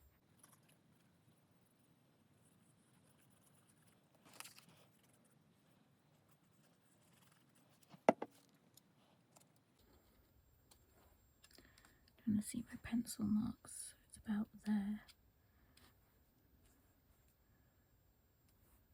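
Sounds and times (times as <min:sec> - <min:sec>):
sharp knock on work surface: 0:08.1 - 0:08.3.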